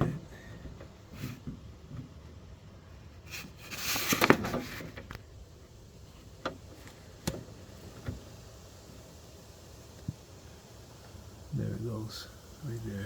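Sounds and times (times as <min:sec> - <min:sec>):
hands rustling and scraping: 0:03.2 - 0:05.2.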